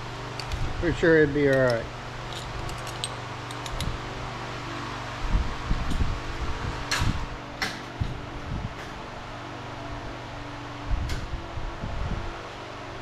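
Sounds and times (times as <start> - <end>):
steady mechanical hum: 0.0 - 13.0
sharp clicks: 2.7 - 3.9.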